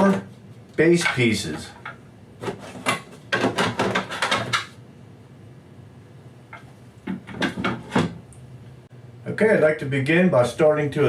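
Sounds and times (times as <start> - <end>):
hard parts knocking on a bench: 2.4 - 4.7, 7.1 - 8.2.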